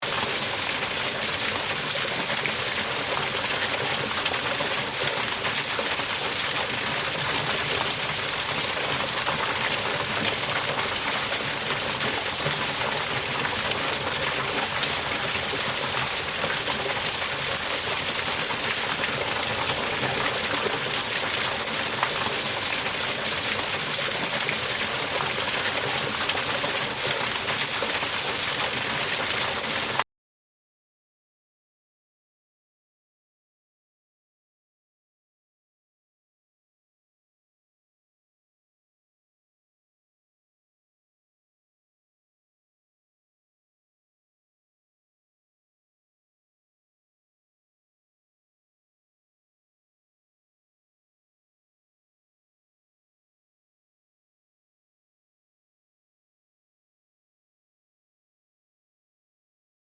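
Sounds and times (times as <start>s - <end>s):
water rushing over spillway: 0.0s - 30.0s.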